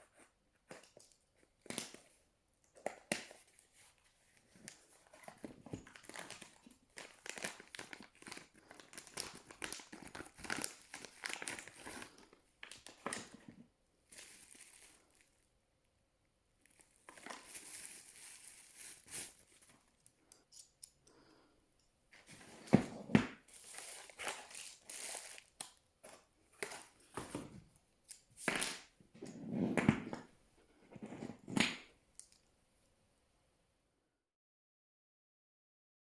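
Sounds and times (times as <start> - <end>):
packaging crinkling and rustling: 3.2 - 15.5, 16.6 - 20.1, 22.2 - 28.9.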